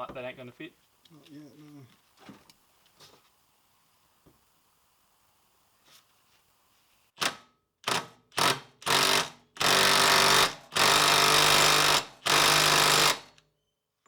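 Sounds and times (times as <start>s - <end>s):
impact wrench bursts: 7.2s - 13.4s.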